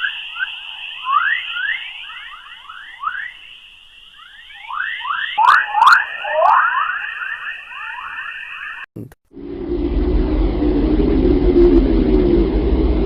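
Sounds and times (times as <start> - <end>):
quick rising radio chirps: 0.0 - 8.9
steady high tone: 0.0 - 13.0.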